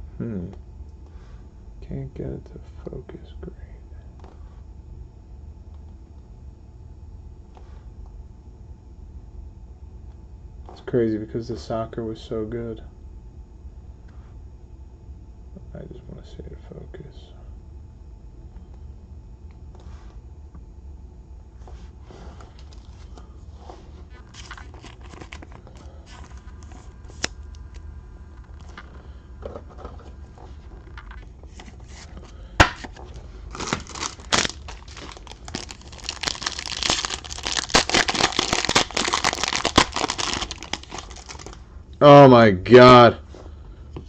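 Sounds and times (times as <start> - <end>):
card pack wrapping crinkling: 24.1 - 27.5, 30.9 - 41.6.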